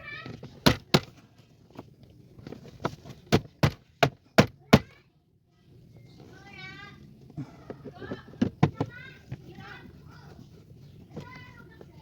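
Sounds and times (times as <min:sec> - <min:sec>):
knocks on plastic trim: 0:03.3 - 0:04.9.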